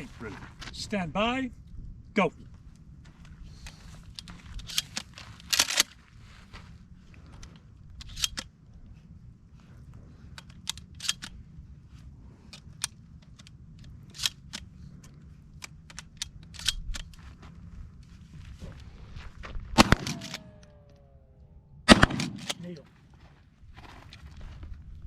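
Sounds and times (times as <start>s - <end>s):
shotgun shells loading clicks: 4.0s - 5.9s, 7.9s - 8.5s, 10.3s - 11.4s, 12.5s - 17.2s, 19.8s - 21.0s, 22.1s - 22.6s.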